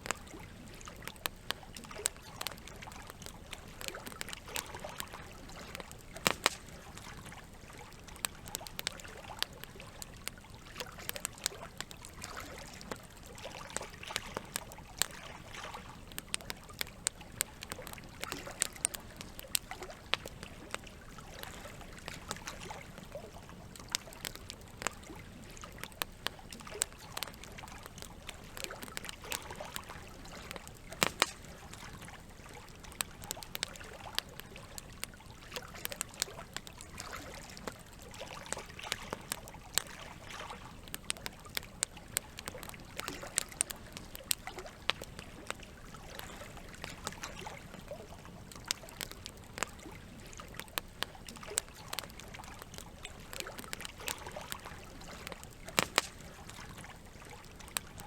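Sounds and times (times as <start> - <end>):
campfire crackling and popping: 0.0 - 58.0
running water trickling: 0.0 - 58.0.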